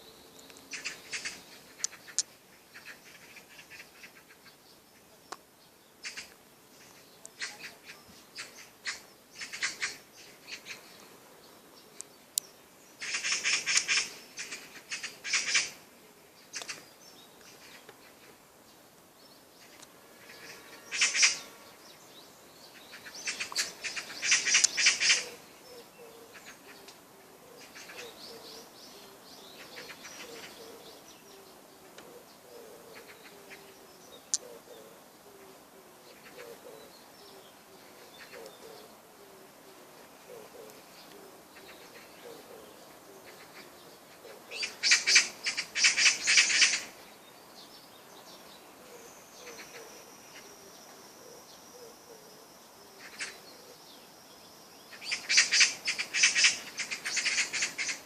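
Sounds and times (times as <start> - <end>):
birds chattering: 0.0 - 58.0
soft low bird call: 22.7 - 47.0.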